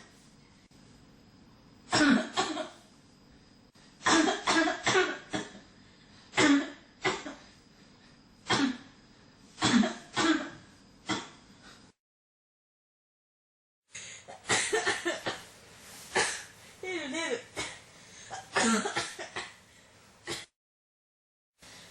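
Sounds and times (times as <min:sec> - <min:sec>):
person coughing: 0:01.9 - 0:02.8, 0:04.0 - 0:05.7, 0:06.3 - 0:07.5, 0:08.5 - 0:09.0, 0:09.6 - 0:11.4, 0:14.3 - 0:15.4, 0:16.1 - 0:16.5, 0:17.6 - 0:19.6, 0:20.3 - 0:20.5.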